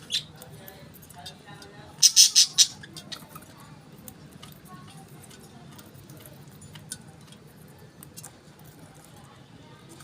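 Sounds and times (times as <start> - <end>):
budgies clicking faintly: 1.1 - 3.5.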